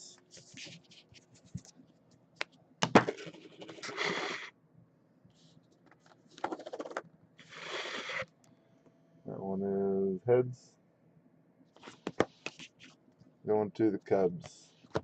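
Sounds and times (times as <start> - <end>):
cards scraping and rustling: 2.4 - 4.5, 5.7 - 8.3, 11.8 - 13.0.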